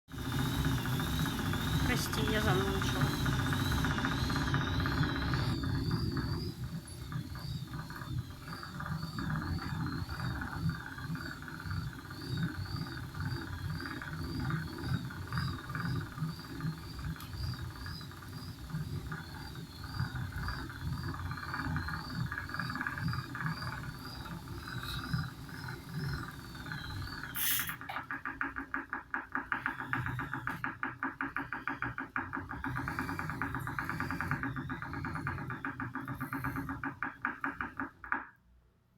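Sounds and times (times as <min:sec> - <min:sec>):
high wavering whine: 0:00.1 - 0:28.0
machine knocking: 0:00.1 - 0:38.4.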